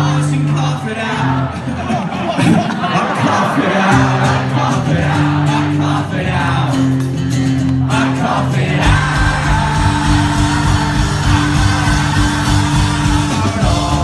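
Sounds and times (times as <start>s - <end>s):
crowd singing along: 0.0s - 14.0s
live rock band playing: 6.4s - 14.0s
steady low beat: 8.8s - 14.0s.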